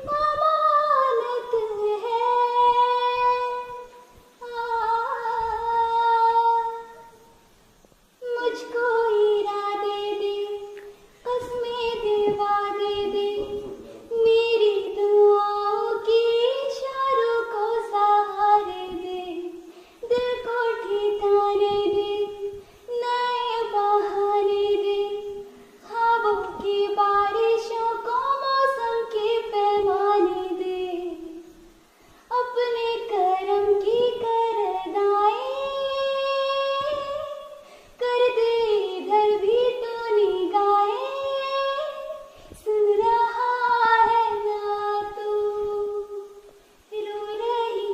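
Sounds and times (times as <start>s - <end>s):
woman singing unaccompanied: 0.0s - 47.9s
woman breathing: 19.7s - 20.0s, 22.5s - 22.9s, 31.8s - 32.3s, 37.6s - 38.0s.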